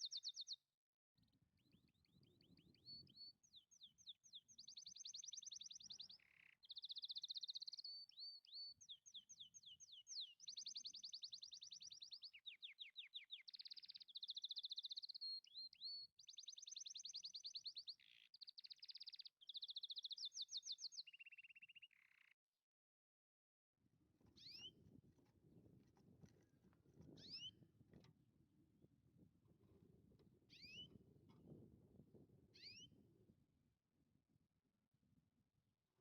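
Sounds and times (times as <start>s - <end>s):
songbird singing trills: 0.0s - 0.6s, 1.6s - 22.3s, 24.4s - 24.8s, 27.1s - 27.6s, 30.5s - 31.0s, 32.5s - 33.0s.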